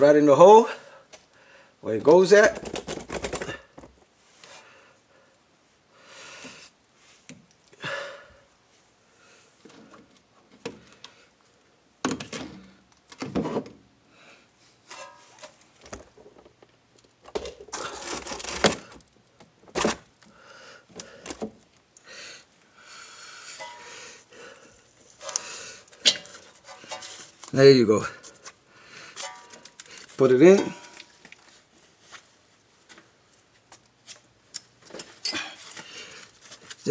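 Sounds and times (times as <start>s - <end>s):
metal parts knocking and scraping: 25.3s - 27.4s.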